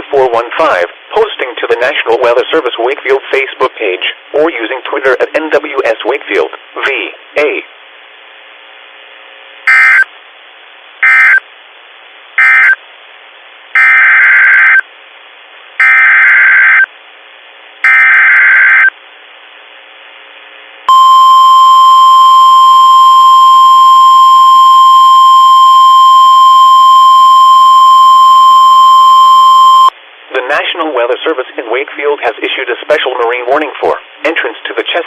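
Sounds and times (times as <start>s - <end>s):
loud steady alarm tone: 9.6s - 10.1s, 11.0s - 11.4s, 12.4s - 12.8s, 13.8s - 14.8s, 15.8s - 16.9s, 17.8s - 18.9s, 20.9s - 29.9s
digital data bursts: 11.0s - 11.4s, 12.4s - 12.8s.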